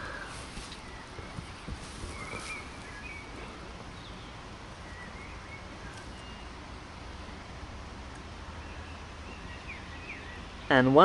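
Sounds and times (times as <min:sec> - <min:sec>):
faint bird chirps: 0:00.0 - 0:07.3
steady background hiss: 0:00.0 - 0:11.0.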